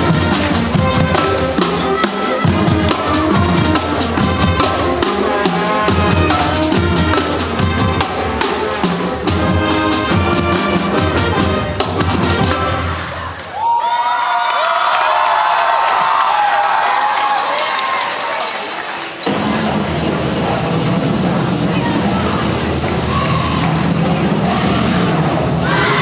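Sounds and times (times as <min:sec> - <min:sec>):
drum hits: 0:00.0 - 0:13.0, 0:19.2 - 0:26.0
brass band music: 0:00.0 - 0:13.4.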